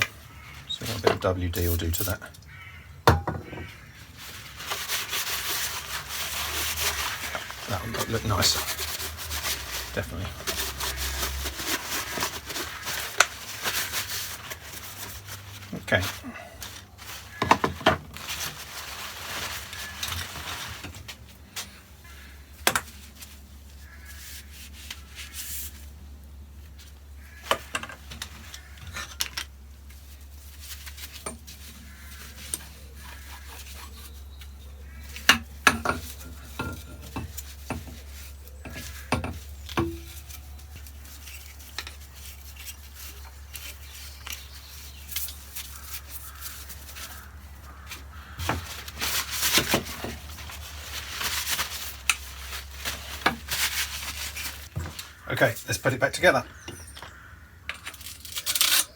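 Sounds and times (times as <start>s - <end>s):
rubbing and handling of parts: 0.0s - 26.0s, 26.6s - 58.9s
clicks and knocks of small pieces: 57.0s - 58.9s.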